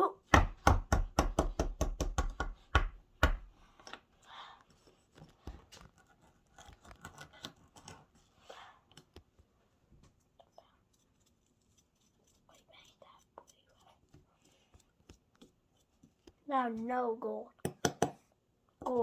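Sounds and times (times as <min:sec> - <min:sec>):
tool knocking on plaster: 0:00.3 - 0:03.6, 0:17.6 - 0:18.2.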